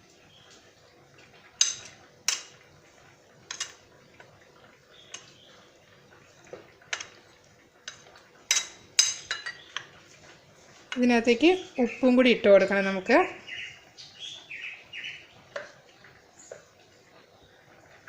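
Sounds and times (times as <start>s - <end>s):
spoon clinking against bowl: 7.9s - 9.9s.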